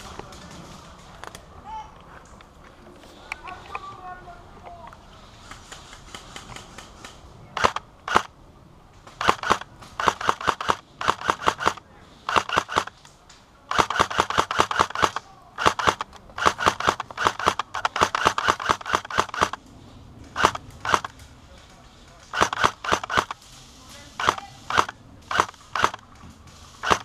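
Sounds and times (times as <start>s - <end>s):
airsoft gun shots: 7.6s - 8.3s, 13.7s - 19.6s, 22.4s - 23.4s, 24.2s - 26.0s.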